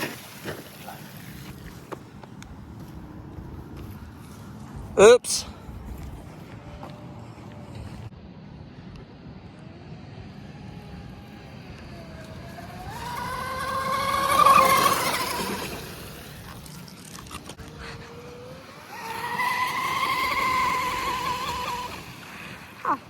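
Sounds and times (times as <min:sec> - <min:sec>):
electric motor whining: 0:10.3 - 0:23.0.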